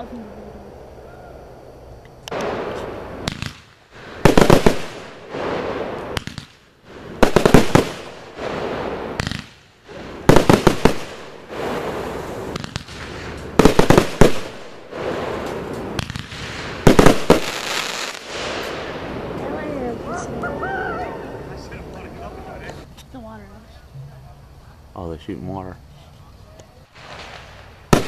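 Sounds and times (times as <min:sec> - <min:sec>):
fireworks hissing crackle: 0:01.7 - 0:28.0
fireworks rapid bangs: 0:02.3 - 0:20.0, 0:26.9 - 0:28.0.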